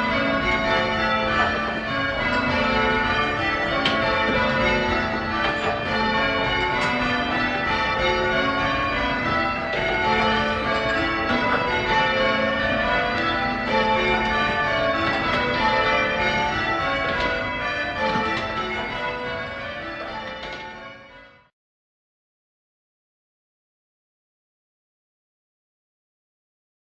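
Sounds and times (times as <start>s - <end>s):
church bells ringing changes: 0.0s - 21.5s.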